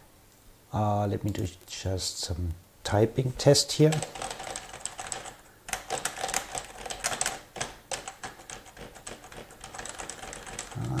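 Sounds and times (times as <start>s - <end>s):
typing on computer keyboard: 3.9s - 11.0s.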